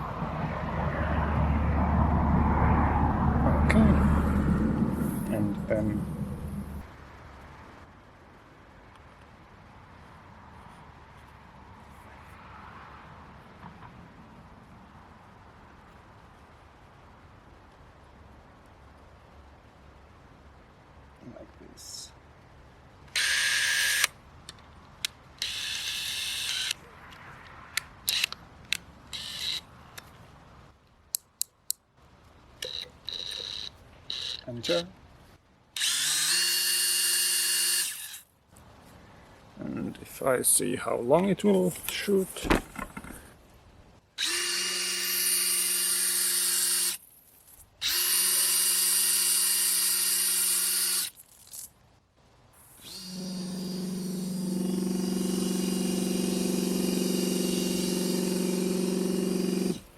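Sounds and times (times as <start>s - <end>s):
electric drill spinning: 23.2s - 24.1s, 25.4s - 26.8s, 29.1s - 29.6s, 32.6s - 34.4s, 35.8s - 38.2s, 44.2s - 47.0s, 47.8s - 51.2s, 52.6s - 59.9s.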